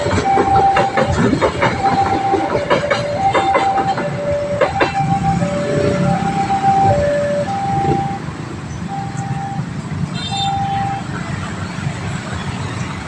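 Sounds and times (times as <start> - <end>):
wheels clacking over rail joints: 0.0 - 8.2
two-tone crossing alarm siren: 0.0 - 9.8
train rumbling past: 0.0 - 13.0.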